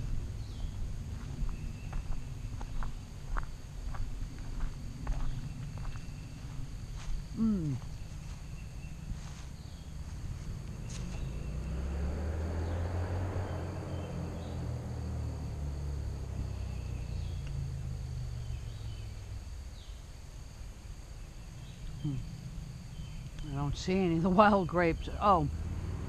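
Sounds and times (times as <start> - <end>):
bird chirps: 0.0 - 3.0, 7.4 - 11.9, 12.5 - 14.8, 16.4 - 17.5, 18.3 - 20.1, 21.2 - 25.5
cicada buzzing: 0.0 - 26.0
crickets chirping: 0.0 - 26.0
low engine hum: 0.0 - 26.0.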